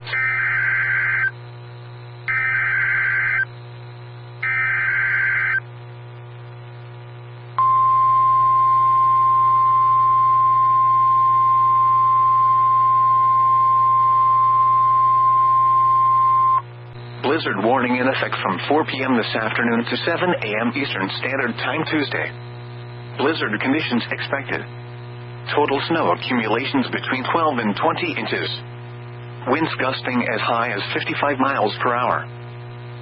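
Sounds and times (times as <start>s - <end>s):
warbling data header bursts: 0.1s - 1.4s, 2.3s - 3.5s, 4.4s - 5.6s
steady attention tone: 7.6s - 18.4s.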